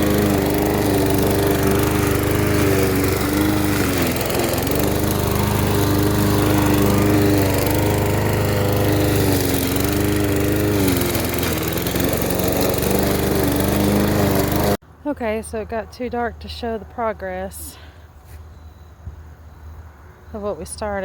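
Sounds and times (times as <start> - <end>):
lawn mower engine running: 0.0 - 14.8.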